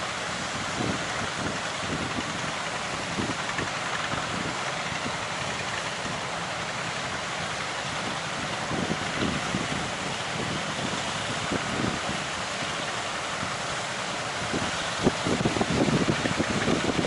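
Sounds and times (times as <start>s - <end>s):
waves breaking: 0.0s - 17.0s
wind buffeting microphone: 0.1s - 17.0s
strong wind rushing: 8.3s - 12.5s, 14.4s - 17.0s.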